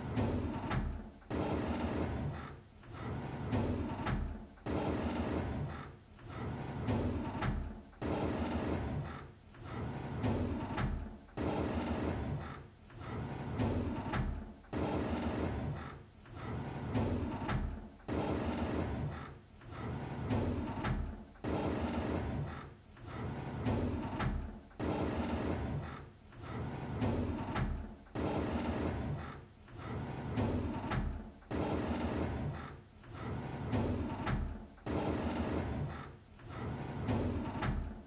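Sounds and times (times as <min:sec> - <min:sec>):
drawer sliding open: 0:23.0 - 0:38.0.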